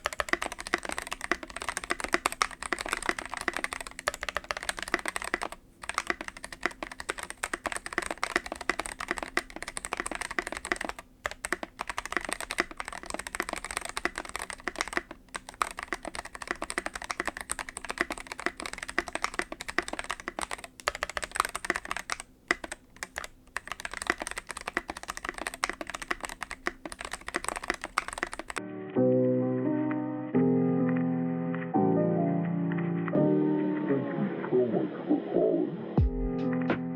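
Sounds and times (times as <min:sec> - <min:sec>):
mechanical keyboard typing: 0:00.0 - 0:28.6.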